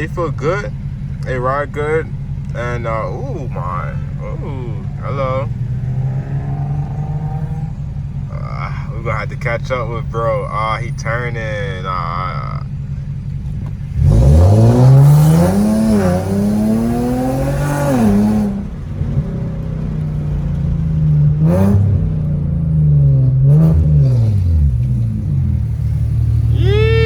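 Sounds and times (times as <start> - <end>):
car engine accelerating: 0.0 - 27.0.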